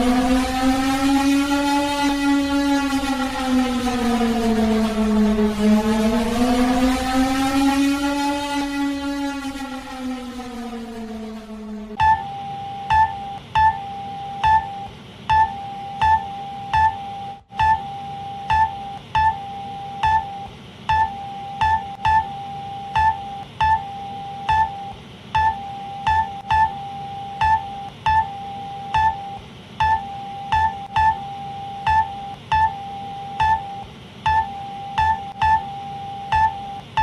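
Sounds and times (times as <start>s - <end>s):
steady electronic alert tone: 0.0s - 22.3s, 22.9s - 26.8s, 31.8s - 36.8s
sharp clicking beeps: 12.0s - 37.0s.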